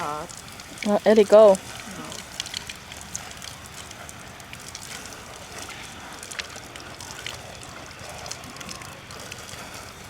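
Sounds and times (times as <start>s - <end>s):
water running from shower: 0.0s - 3.6s.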